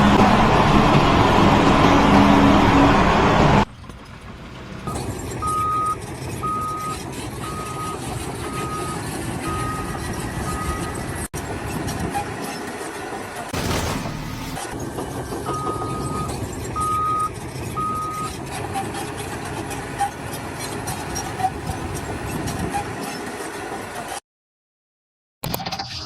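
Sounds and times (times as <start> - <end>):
construction machine engine running: 0.0 - 22.6
reversing alarm beeping: 4.9 - 11.0, 13.7 - 18.3.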